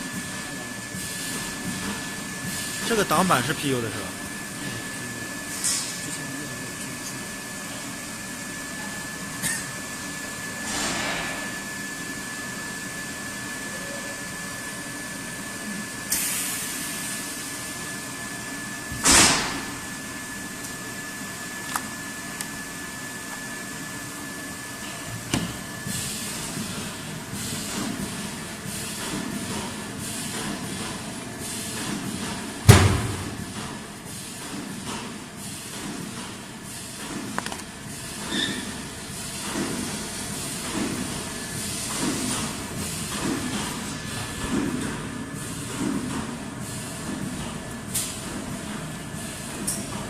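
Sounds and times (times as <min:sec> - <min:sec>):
machine press clunks: 0:19.0 - 0:19.8.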